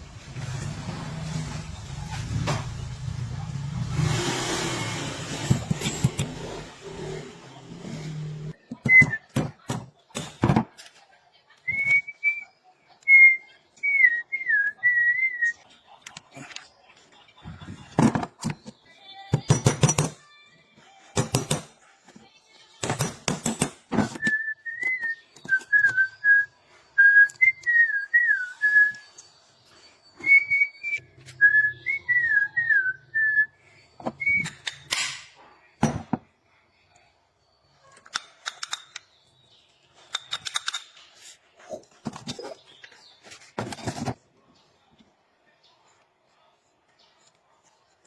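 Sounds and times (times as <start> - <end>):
person whistling a tune: 24.1 - 29.2, 30.2 - 33.6.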